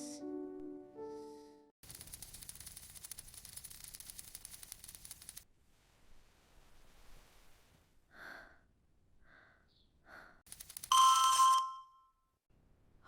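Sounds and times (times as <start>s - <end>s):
soft breathy sounds: 5.6s - 10.5s
alarm clock ringing: 10.9s - 11.9s.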